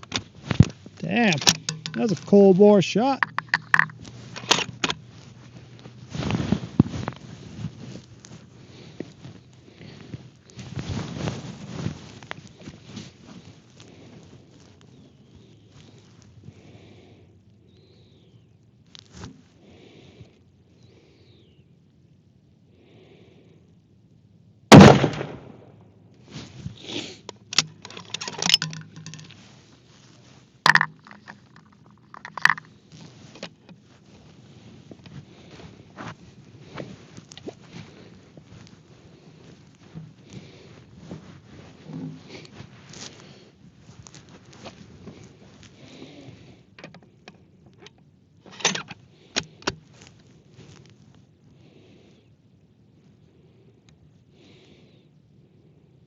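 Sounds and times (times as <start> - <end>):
rifle bolt clicks and scrapes: 0.0 - 2.4, 3.2 - 5.1, 27.5 - 29.4, 30.7 - 33.8, 47.8 - 49.8
sharp rifle bolt clicks: 1.2 - 2.3, 3.2 - 5.0, 27.5 - 29.3
rifle bolt metallic clacks: 1.2 - 2.4, 3.1 - 5.0, 27.5 - 29.3
rifle shot: 24.7 - 25.7.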